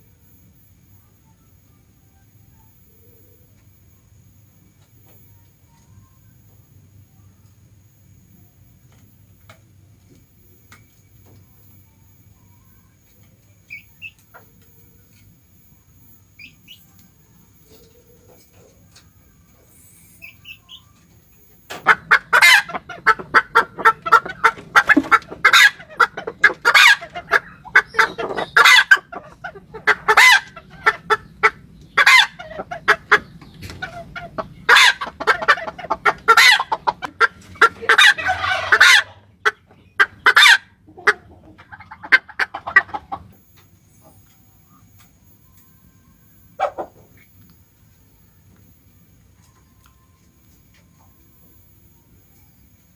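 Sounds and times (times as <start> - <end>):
faint bird chirps: 10.5 - 23.0
jungle fowl clucking rapidly: 21.4 - 43.4, 46.6 - 47.3.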